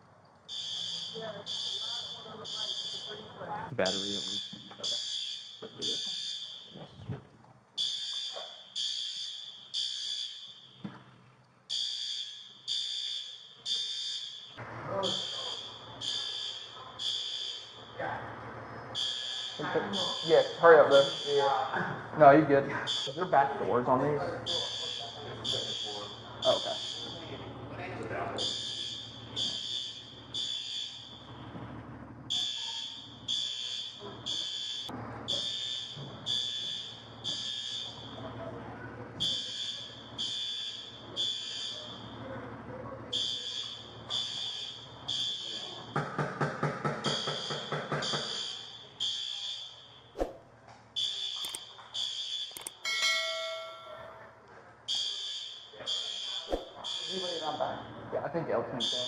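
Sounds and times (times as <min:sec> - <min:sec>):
fire alarm horn: 0:00.5 - 0:06.8, 0:07.8 - 0:10.8, 0:11.7 - 0:18.0, 0:18.9 - 0:27.7, 0:28.3 - 0:38.4, 0:39.2 - 0:42.3, 0:43.2 - 0:45.9, 0:47.0 - 0:50.2, 0:51.0 - 0:54.2, 0:54.9 - 0:59.0.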